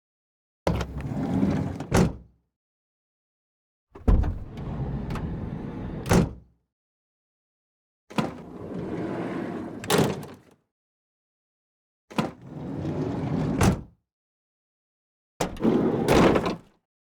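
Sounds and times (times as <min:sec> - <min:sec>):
sliding door thunk: 0:04.0 - 0:06.4, 0:15.4 - 0:16.6.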